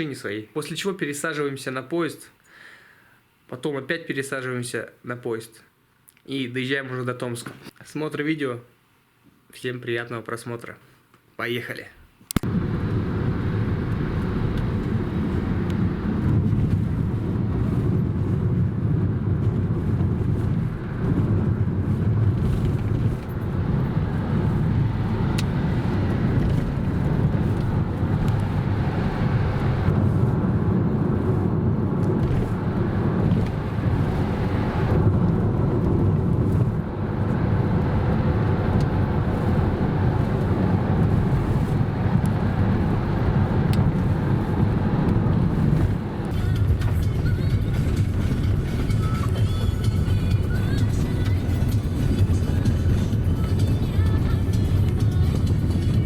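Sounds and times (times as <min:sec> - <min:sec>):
car engine and tyres rumbling: 0:12.4 - 0:56.0.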